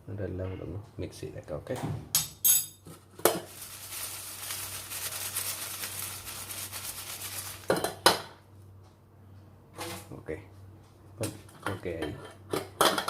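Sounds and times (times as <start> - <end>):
fries rustling: 3.3 - 8.0.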